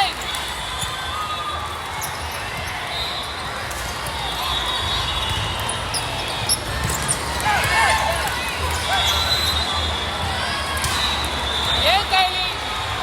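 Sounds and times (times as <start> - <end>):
shoe squeaks: 4.8 - 7.4
balls bouncing on court floor: 4.9 - 8.6.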